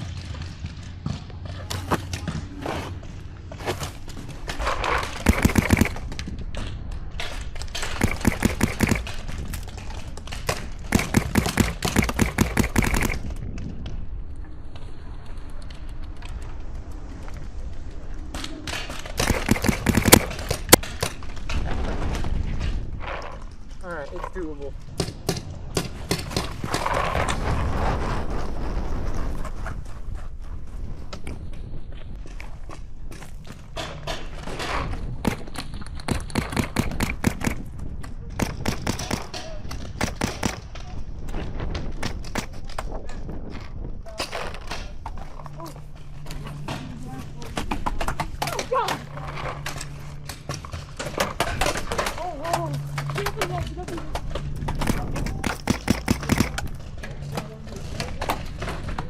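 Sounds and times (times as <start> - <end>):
paintball marker firing: 5.2 - 6.1, 7.9 - 9.3, 10.9 - 13.3, 19.2 - 21.2, 54.7 - 56.8
wind buffeting microphone: 24.7 - 48.5.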